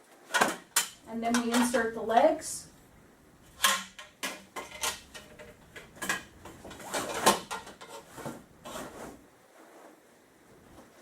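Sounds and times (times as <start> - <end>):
cot legs knocking and clattering: 3.6 - 8.8.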